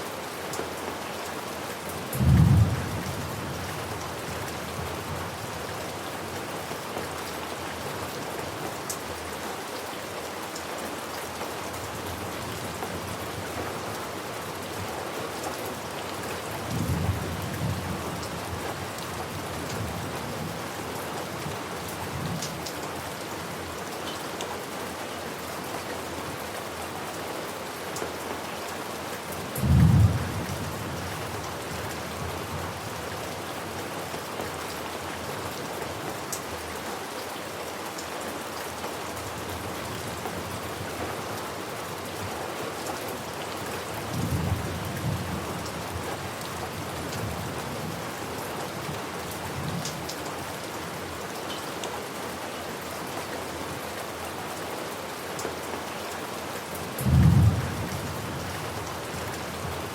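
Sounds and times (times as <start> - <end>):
heavy rain: 0.0 - 59.9.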